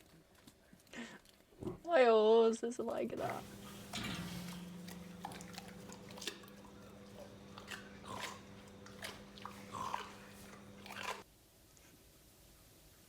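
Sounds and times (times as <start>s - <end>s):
steady low hum: 3.2s - 11.2s
crunchy chewing and biting: 3.3s - 11.2s.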